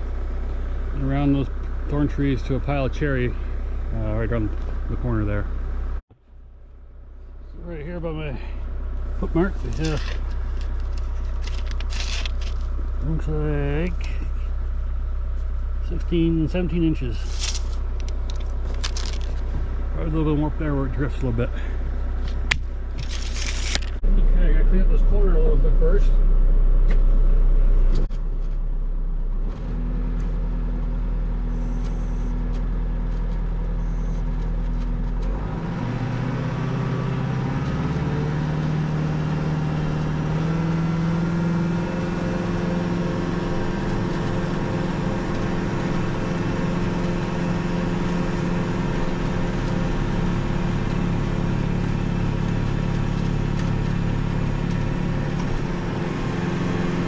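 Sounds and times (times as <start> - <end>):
tractor diesel engine running: 0.0 - 57.0
snowblower working: 7.9 - 14.7, 15.4 - 25.8, 29.5 - 57.0.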